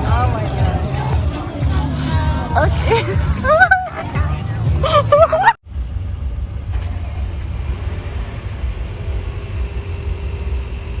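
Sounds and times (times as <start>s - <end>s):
voice with music: 0.0s - 5.6s
moving vehicle rumble: 0.0s - 11.0s.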